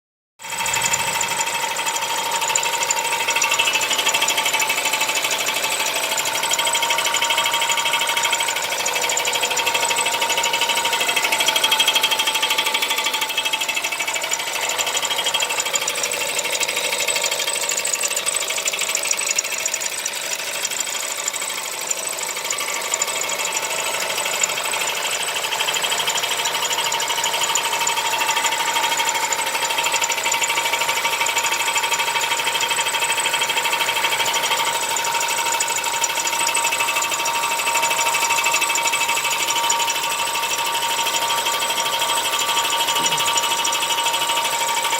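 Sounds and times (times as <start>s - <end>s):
engine knocking clatter: 0.4s - 44.9s.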